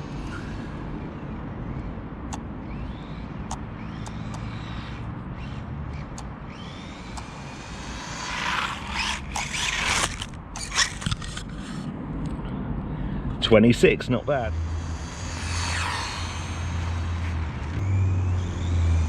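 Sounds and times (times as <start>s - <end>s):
rc car passing by: 0.0s - 12.2s, 13.5s - 19.0s
electric motor whining: 1.8s - 11.8s, 14.2s - 19.0s.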